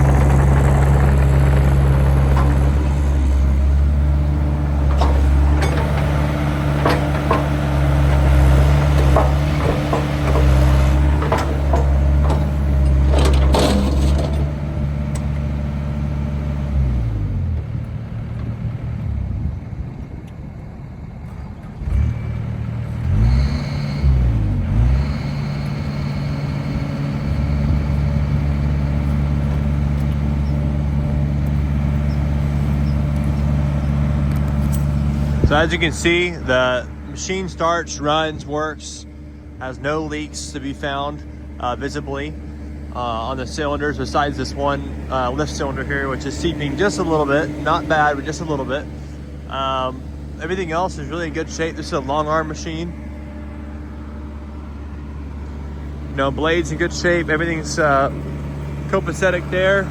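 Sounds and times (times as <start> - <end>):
excavator diesel engine running: 0.0 - 59.9
sharp metallic clanks: 4.7 - 15.3.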